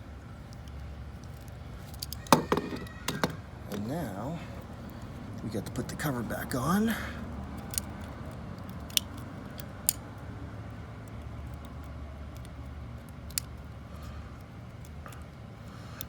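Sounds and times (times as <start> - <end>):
plastic clicks and taps: 2.0 - 3.4.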